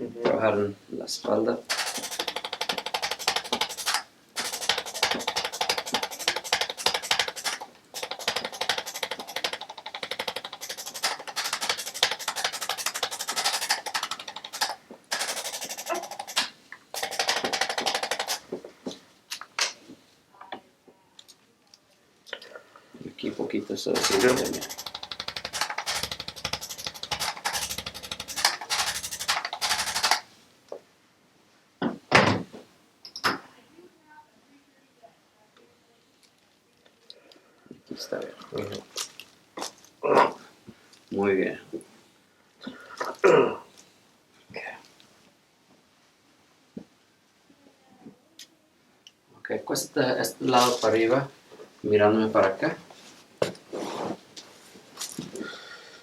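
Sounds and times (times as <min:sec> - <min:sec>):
adjusting instrument rapid clicks: 0:01.7 - 0:18.5, 0:23.9 - 0:30.3.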